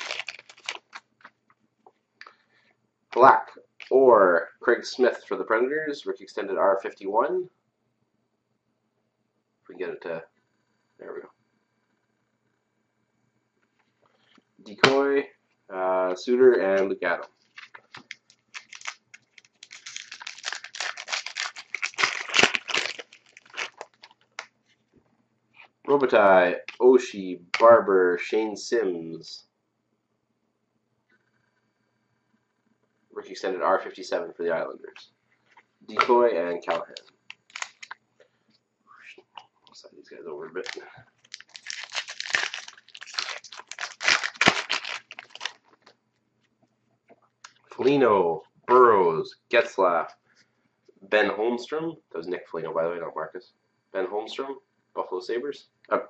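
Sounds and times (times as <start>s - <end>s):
wrapper tearing and crinkling: 0.0s - 1.1s, 17.5s - 24.5s, 36.7s - 38.0s, 40.6s - 45.8s.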